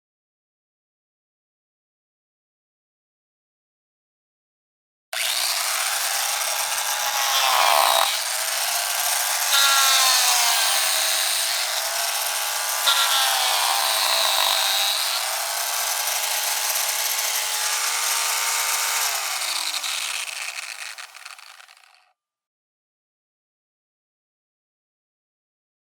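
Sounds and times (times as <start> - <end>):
rotary saw whining and cutting: 5.2 - 22.1.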